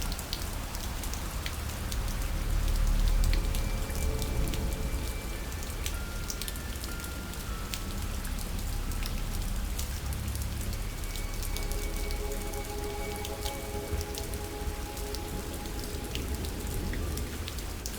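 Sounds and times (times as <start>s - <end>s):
rain patter: 0.0s - 17.9s.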